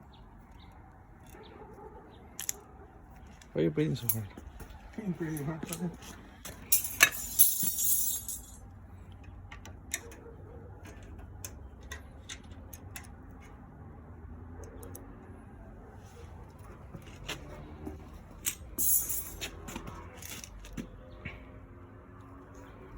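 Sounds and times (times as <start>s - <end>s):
metal tools clinking: 5.3s - 8.6s, 18.4s - 20.5s.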